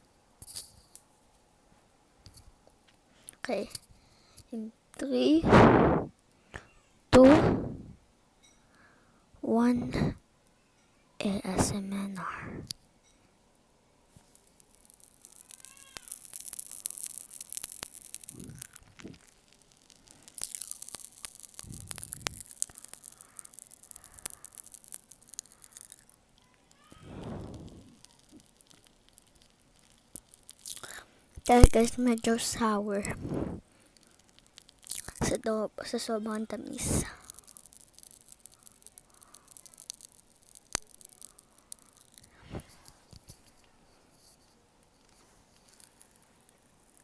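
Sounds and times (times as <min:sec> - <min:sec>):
soft mouth sound: 0:05.4 - 0:08.0, 0:09.8 - 0:10.2, 0:11.5 - 0:12.7, 0:18.2 - 0:19.3, 0:21.6 - 0:24.5, 0:26.9 - 0:28.5, 0:33.0 - 0:33.6
popping candy crackling: 0:14.1 - 0:47.0.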